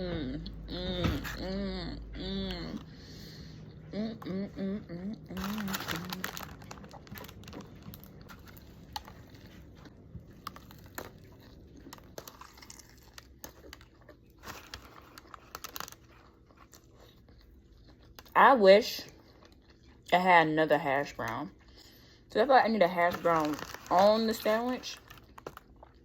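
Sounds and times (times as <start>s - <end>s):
quiet chewing: 1.2s - 18.4s, 19.0s - 20.1s, 23.0s - 26.0s
paper wrapper crinkling: 5.3s - 16.9s, 22.8s - 25.8s.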